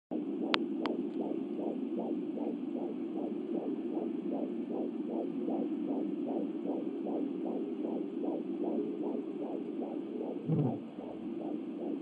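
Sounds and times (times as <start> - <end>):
fetal heartbeat whooshing pulse: 0.1 - 12.0.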